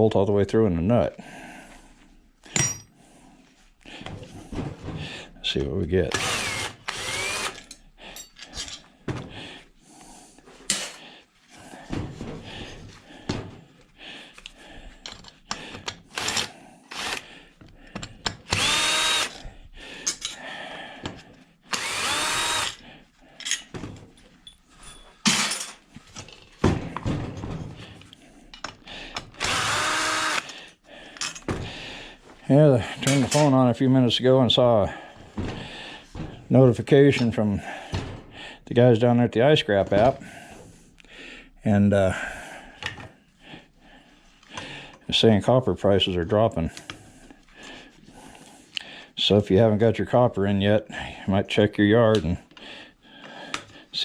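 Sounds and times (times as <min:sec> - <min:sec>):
metal parts clicking and knocking: 0:02.5 - 0:02.9, 0:15.0 - 0:17.2, 0:17.9 - 0:19.4
power drill motor whine: 0:06.1 - 0:07.7, 0:16.2 - 0:17.2, 0:18.5 - 0:19.4, 0:21.7 - 0:22.8, 0:29.4 - 0:30.6.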